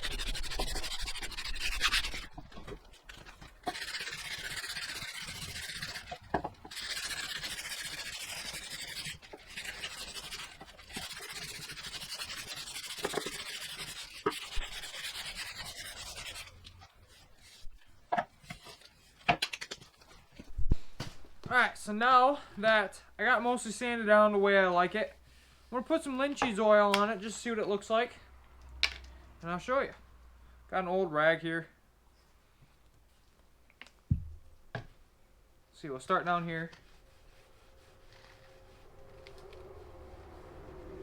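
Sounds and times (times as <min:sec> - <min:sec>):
sandpaper rubbing on wood: 0:00.0 - 0:02.8, 0:03.6 - 0:17.7, 0:36.8 - 0:39.0.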